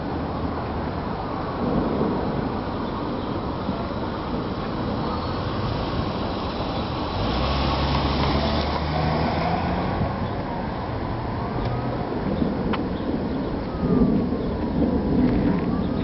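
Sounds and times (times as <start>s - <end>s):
street traffic noise: 0.0s - 16.0s
vehicle engine humming: 2.7s - 13.7s.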